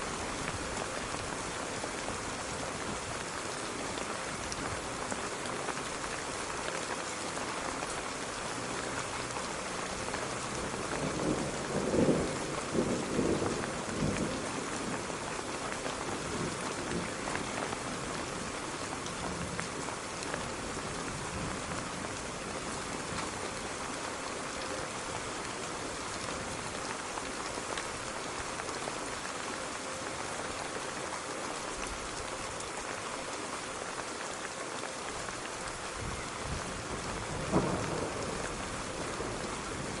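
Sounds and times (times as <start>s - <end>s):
steady rain pattering: 0.0s - 40.0s
thunder rumble and cracks: 10.9s - 15.0s, 36.0s - 40.0s.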